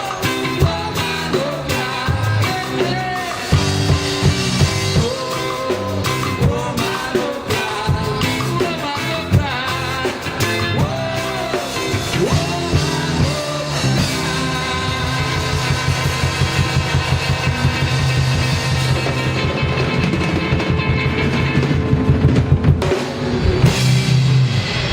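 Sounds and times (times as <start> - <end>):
live band playing reggae: 0.0 - 24.9.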